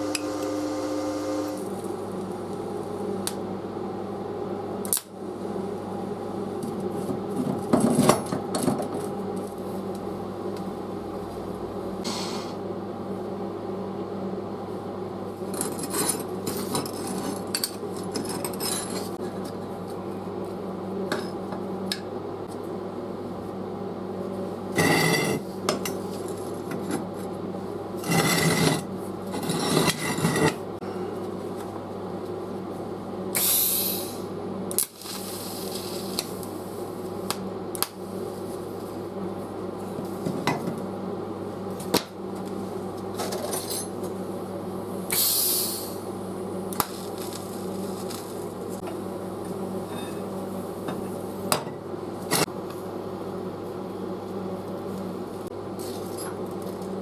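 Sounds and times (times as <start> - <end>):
steady machine hum: 0.0 - 57.0.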